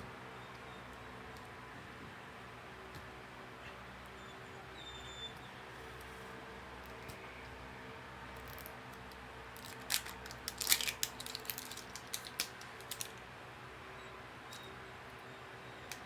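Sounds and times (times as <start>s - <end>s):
plastic packaging crinkling: 9.6s - 13.2s.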